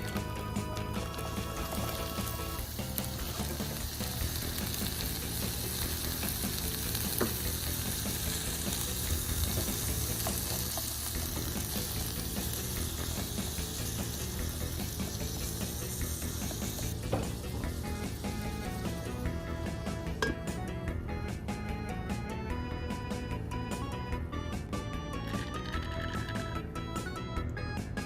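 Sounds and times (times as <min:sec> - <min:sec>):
food sizzling in hot oil: 0:00.0 - 0:20.3.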